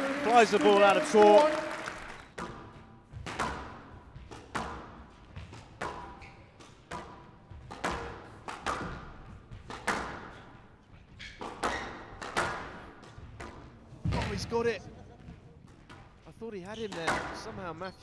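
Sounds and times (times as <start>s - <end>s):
squash ball knocks with echo: 2.3s - 10.4s, 11.4s - 14.6s.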